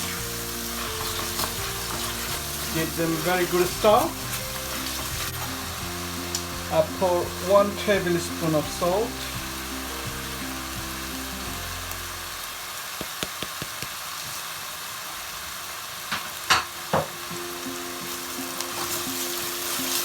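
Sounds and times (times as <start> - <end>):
paste frying in oil: 0.0 - 20.0
spoon knocking on pan: 13.0 - 14.0.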